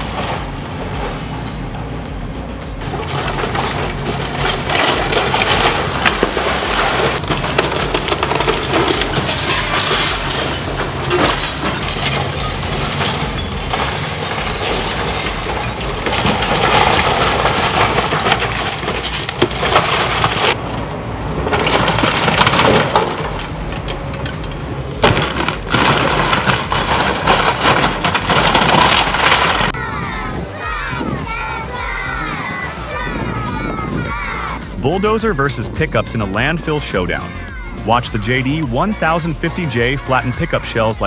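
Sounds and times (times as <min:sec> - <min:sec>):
diesel engine running: 0:00.0 - 0:41.0
glass breaking: 0:02.8 - 0:20.6, 0:21.4 - 0:29.8
cracks and crashes: 0:02.8 - 0:29.8
timber crunching and splintering: 0:02.9 - 0:20.8, 0:21.4 - 0:29.8.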